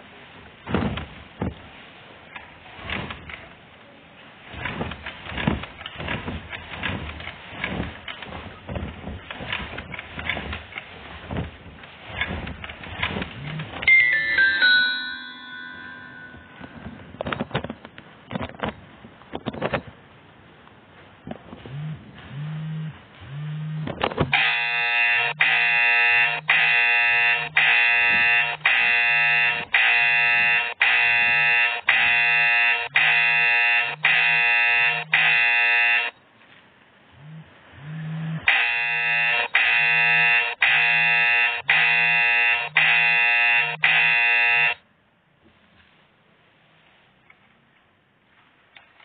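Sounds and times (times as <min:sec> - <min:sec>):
phone vibrating: 0:21.7 - 0:36.2, 0:37.2 - 0:44.8
harsh buzzer alert: 0:24.3 - 0:36.2, 0:37.8 - 0:44.8.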